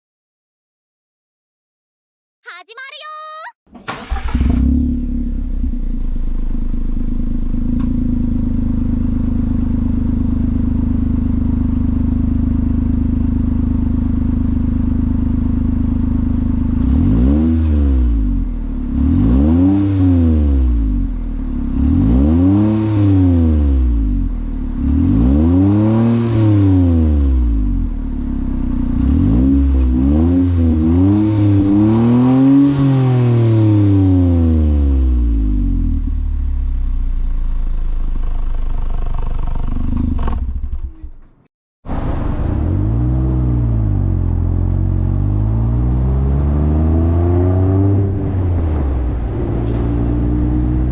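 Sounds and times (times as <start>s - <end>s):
engine revving: 3.9s - 6.0s, 16.3s - 27.8s, 28.8s - 36.0s, 42.1s - 50.9s.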